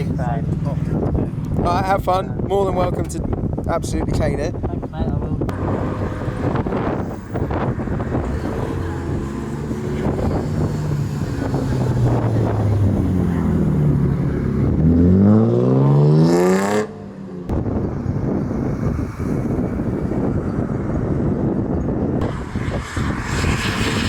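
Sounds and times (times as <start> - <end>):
car engine accelerating hard: 5.5 - 20.7, 22.2 - 24.0.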